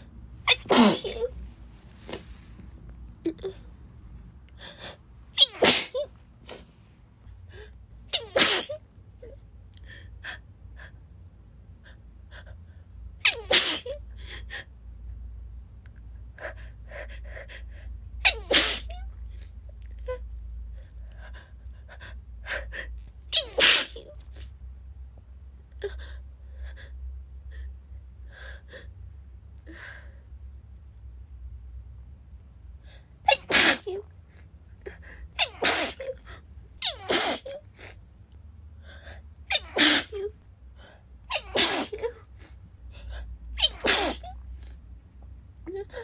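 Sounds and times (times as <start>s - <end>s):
woman sneezing: 0.5s - 1.3s, 5.4s - 6.7s, 8.2s - 8.8s, 13.2s - 14.0s, 18.3s - 18.9s, 23.4s - 24.1s, 33.3s - 34.1s, 35.4s - 36.2s, 36.8s - 37.6s, 39.5s - 40.3s, 41.3s - 42.3s, 43.6s - 44.4s
sniffs and breaths: 1.6s - 2.8s.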